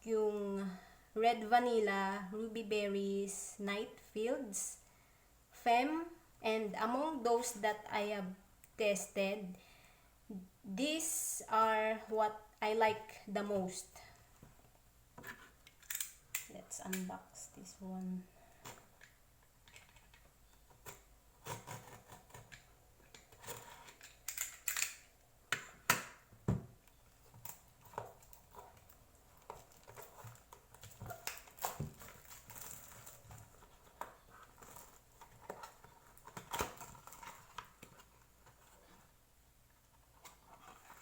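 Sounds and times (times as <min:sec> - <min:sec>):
box packaging being handled: 0:18.6 - 0:24.8, 0:26.7 - 0:39.2, 0:39.8 - 0:41.0.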